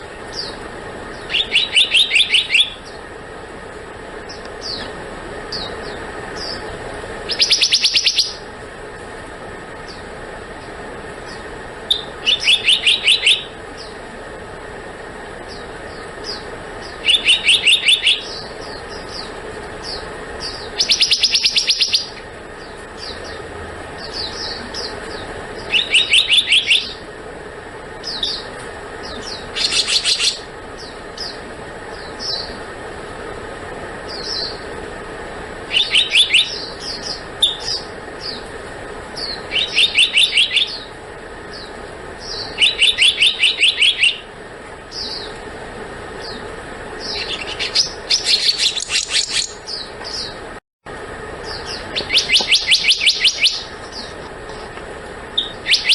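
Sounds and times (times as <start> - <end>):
bird chirps: 0.2 - 3.1, 4.2 - 8.5, 9.8 - 14.0, 15.4 - 27.0, 28.0 - 32.7, 34.0 - 34.7, 35.7 - 38.5, 39.2 - 44.3, 44.9 - 45.4, 46.2 - 50.4, 51.4 - 54.7, 55.4 - 55.9
bird whistled notes: 1.2 - 3.0, 7.3 - 8.4, 11.9 - 14.0, 16.3 - 19.3, 19.9 - 22.2, 25.6 - 27.0, 35.7 - 38.4, 39.2 - 40.9, 41.6 - 44.3, 47.0 - 50.4, 51.5 - 54.2, 55.4 - 55.9.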